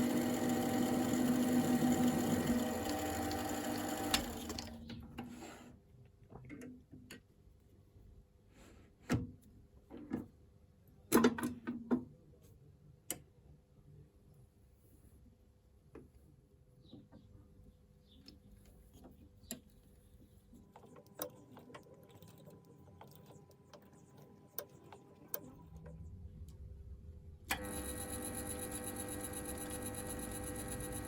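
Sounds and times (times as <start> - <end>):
power tool motor running: 0.0 - 4.7, 27.5 - 31.0.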